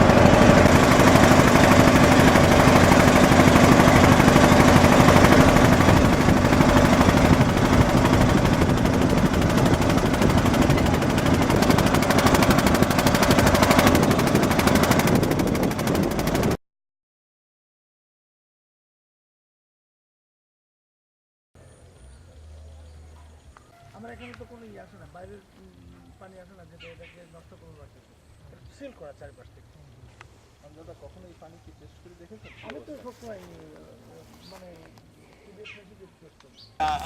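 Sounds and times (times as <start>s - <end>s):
boat engine chugging: 0.0s - 16.6s.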